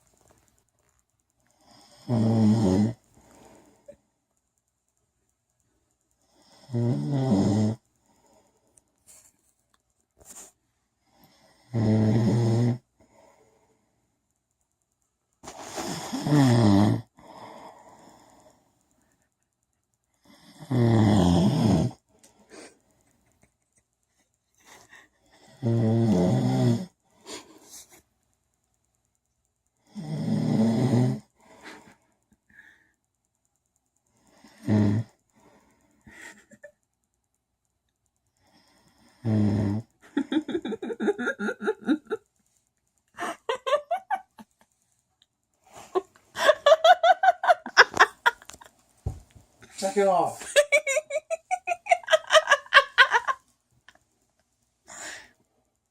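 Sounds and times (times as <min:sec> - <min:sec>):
quiet breathing: 0:00.0 - 0:02.2, 0:02.9 - 0:04.4, 0:05.6 - 0:06.8, 0:07.7 - 0:09.6, 0:10.2 - 0:11.8, 0:12.8 - 0:14.6, 0:17.1 - 0:20.7, 0:22.0 - 0:23.6, 0:31.2 - 0:33.3, 0:34.0 - 0:36.7, 0:38.2 - 0:43.5, 0:53.8 - 0:55.9
man snoring loudly: 0:01.8 - 0:03.0, 0:06.5 - 0:07.8, 0:11.6 - 0:12.8, 0:16.0 - 0:17.1, 0:20.4 - 0:22.0, 0:25.5 - 0:27.0, 0:29.9 - 0:31.3, 0:34.6 - 0:35.2, 0:39.2 - 0:39.9
wheezy breathing: 0:15.4 - 0:16.5, 0:22.1 - 0:23.3, 0:31.3 - 0:33.1, 0:34.1 - 0:36.7, 0:43.1 - 0:44.8, 0:54.8 - 0:55.6.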